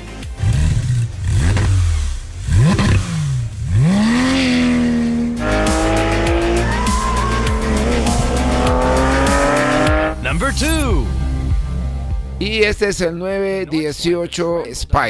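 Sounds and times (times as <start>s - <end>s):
car engine revving: 0.4s - 12.0s.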